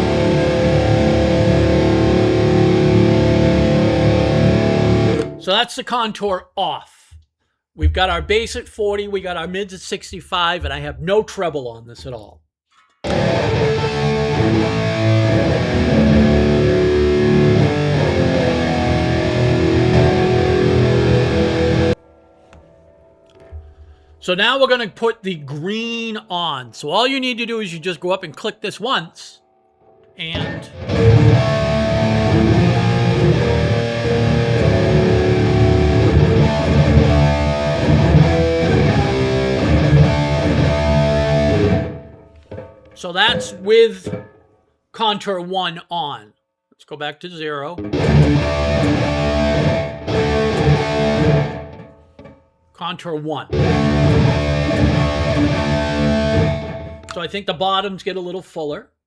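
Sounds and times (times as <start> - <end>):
electric guitar chords: 0.0 - 5.4, 13.0 - 24.2, 29.6 - 44.4, 47.8 - 52.4, 53.5 - 57.2.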